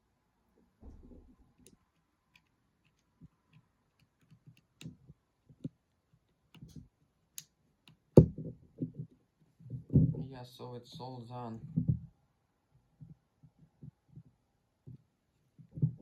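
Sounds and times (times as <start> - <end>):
knock: 0.8 - 1.4
plastic parts clicking and tapping: 1.0 - 10.1.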